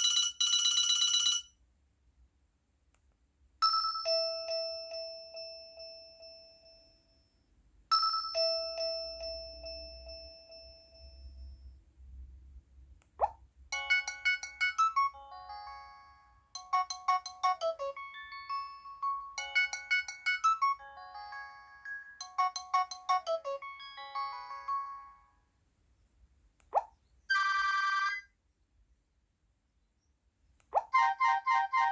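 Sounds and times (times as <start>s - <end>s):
phone ringtone melody: 0.0s - 1.5s, 13.8s - 25.4s, 27.3s - 28.3s, 31.0s - 31.9s
click: 2.9s - 3.1s.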